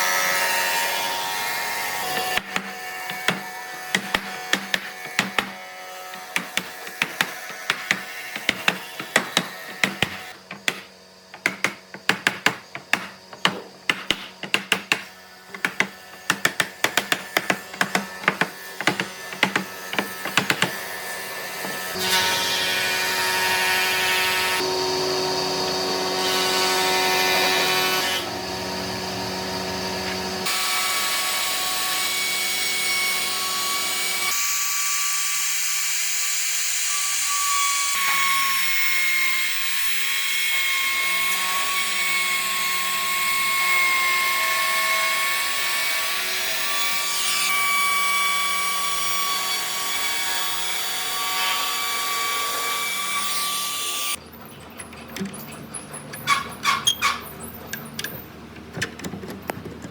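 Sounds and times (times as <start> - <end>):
power tool running: 0.0 - 40.2
tool knocking on wood: 2.2 - 20.9.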